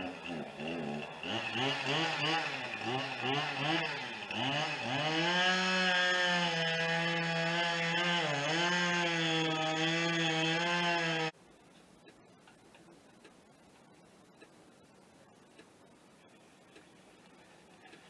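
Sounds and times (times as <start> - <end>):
chainsaw revving: 0.0 - 11.4.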